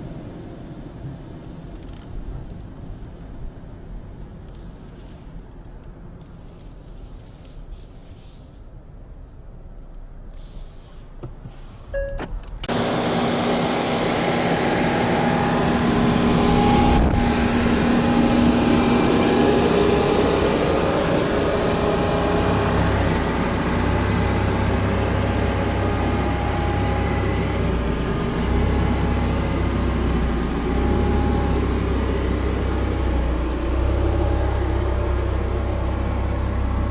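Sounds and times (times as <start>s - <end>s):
car wash rushing noise: 12.7s - 36.9s
motors humming: 12.7s - 36.9s
deep low rumble: 15.1s - 36.9s.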